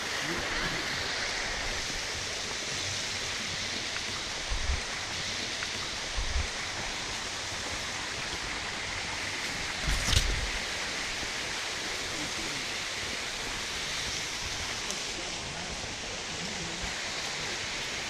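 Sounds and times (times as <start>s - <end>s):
flowing water: 0.0s - 18.0s
sharp click: 9.8s - 10.4s.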